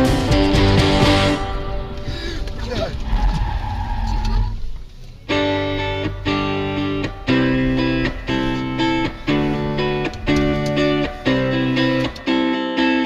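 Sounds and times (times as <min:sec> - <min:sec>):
distorted electric guitar chords: 0:00.0 - 0:03.1, 0:05.2 - 0:13.0
low rumble: 0:00.0 - 0:12.4.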